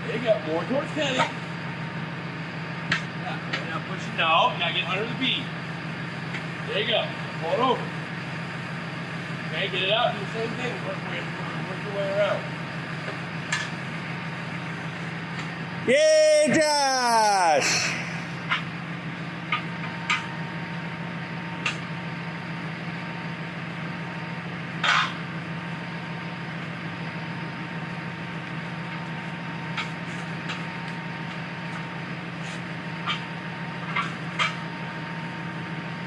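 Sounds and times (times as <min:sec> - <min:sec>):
steady low hum: 0:14.7 - 0:23.4.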